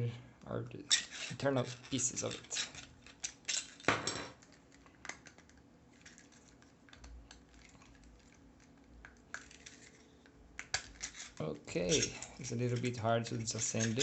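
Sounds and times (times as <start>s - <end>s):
plastic parts rattle: 10.8s - 14.0s.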